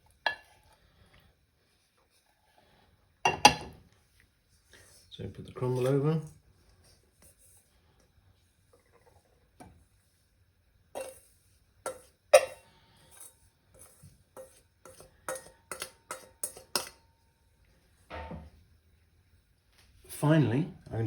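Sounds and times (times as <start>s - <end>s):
utensil clinking on crockery: 3.3s - 3.8s, 11.0s - 11.3s, 11.9s - 17.0s.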